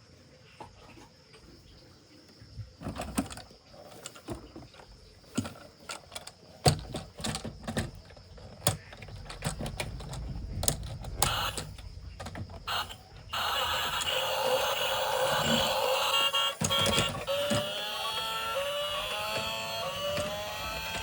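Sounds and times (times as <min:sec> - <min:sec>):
plastic parts clicking and knocking: 0:02.8 - 0:14.2, 0:15.2 - 0:21.0
low rumble: 0:08.2 - 0:15.8.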